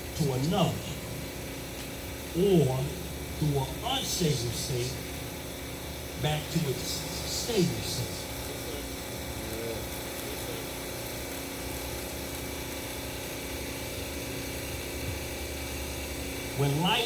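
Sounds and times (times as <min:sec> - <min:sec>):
electrical hum: 0:00.0 - 0:17.0
speech: 0:00.2 - 0:01.0, 0:02.4 - 0:05.0, 0:06.2 - 0:10.7, 0:16.6 - 0:17.0.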